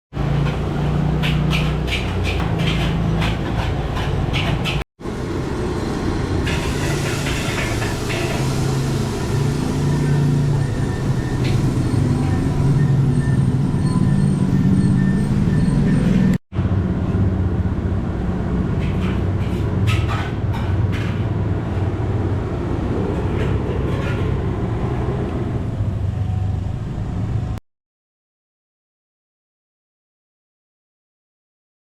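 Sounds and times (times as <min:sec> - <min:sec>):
metal spatula scraping a wok: 0:01.2 - 0:04.8, 0:06.5 - 0:12.1, 0:18.8 - 0:21.4.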